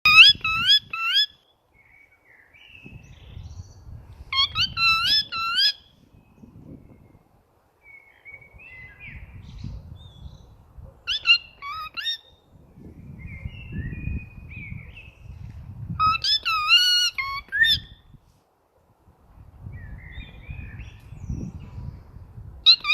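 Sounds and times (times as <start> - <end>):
birds calling: 7.9 - 12.5, 16.0 - 18.0.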